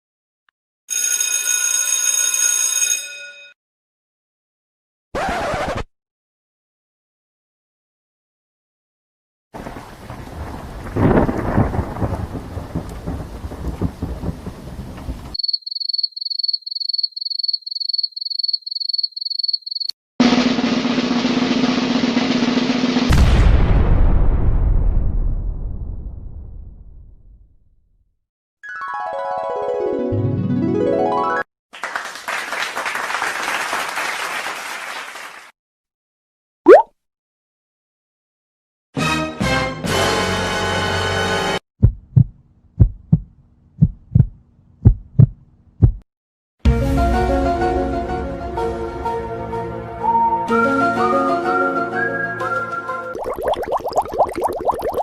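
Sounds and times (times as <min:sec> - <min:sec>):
low rumbling like thunder: 0:09.6 - 0:15.4, 0:23.1 - 0:27.4
crowd applauding: 0:31.8 - 0:35.5.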